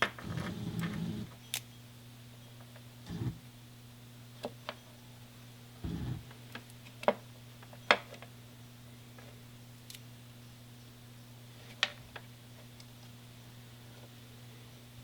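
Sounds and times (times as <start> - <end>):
steady low hum: 0.0 - 6.6.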